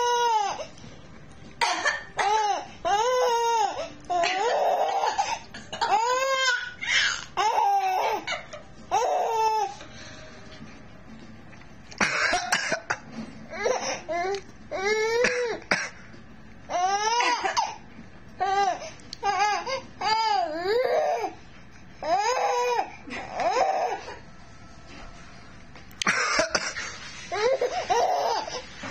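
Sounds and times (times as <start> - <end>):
person coughing: 1.6 - 2.4, 12.0 - 13.0, 26.0 - 26.9
baby laughing: 1.7 - 9.4.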